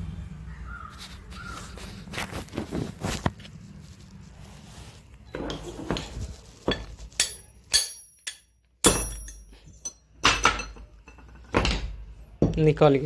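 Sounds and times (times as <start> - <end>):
metal-on-metal blows ringing: 6.7 - 10.9.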